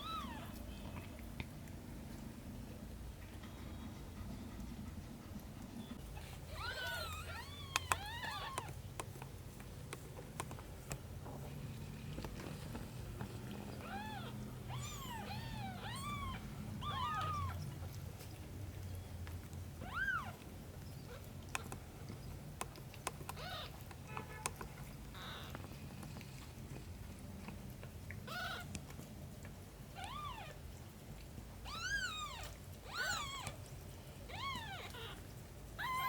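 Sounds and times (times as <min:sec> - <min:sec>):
kittens meowing: 0:00.0 - 0:00.6, 0:05.9 - 0:08.8, 0:13.5 - 0:17.7, 0:19.8 - 0:20.4, 0:23.3 - 0:23.8, 0:25.1 - 0:25.6, 0:28.2 - 0:28.7, 0:30.0 - 0:30.6, 0:31.6 - 0:33.6, 0:34.3 - 0:36.0.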